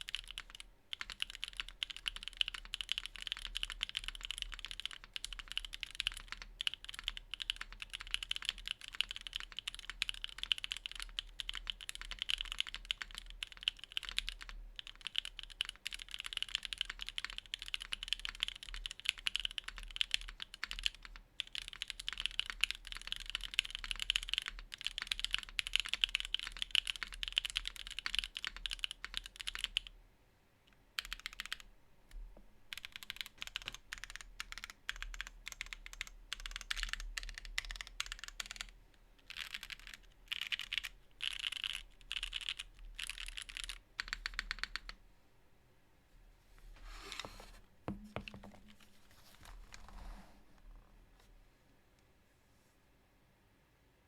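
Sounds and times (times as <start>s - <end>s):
fast keyboard typing: 0.0s - 29.9s, 31.0s - 31.6s, 32.7s - 45.0s.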